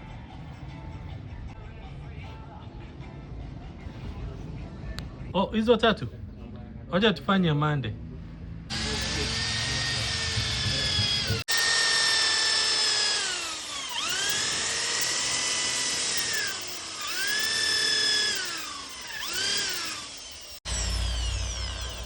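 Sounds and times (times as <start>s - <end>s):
electric drill whining: 8.7s - 22.0s.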